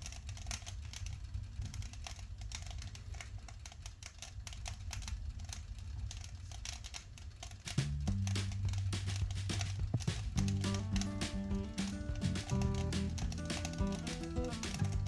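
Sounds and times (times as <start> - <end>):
branches crackling in fireplace: 0.0 - 15.0
music with low notes: 7.8 - 15.0.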